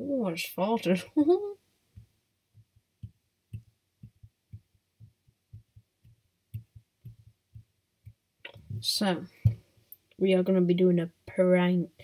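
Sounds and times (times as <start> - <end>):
soft low thumps: 1.9 - 9.7.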